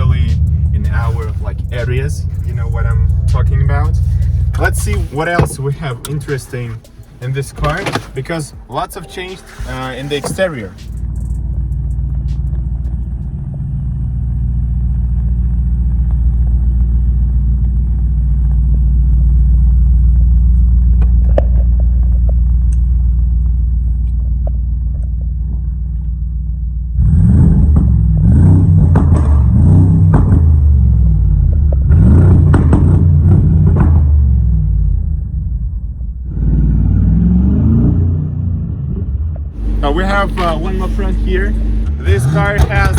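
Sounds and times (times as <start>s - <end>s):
car engine rumbling: 0.0s - 42.9s.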